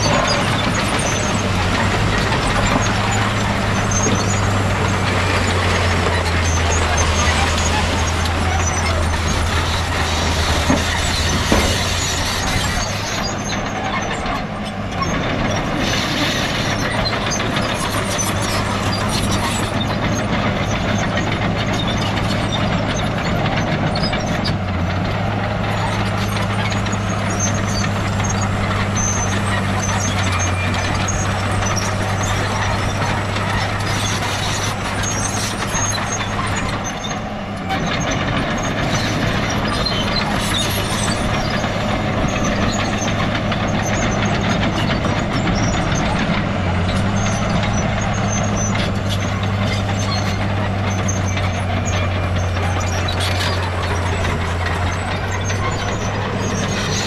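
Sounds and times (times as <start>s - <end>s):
machinery knocks: 0.0s - 13.7s
diesel machinery engines running: 0.0s - 57.0s.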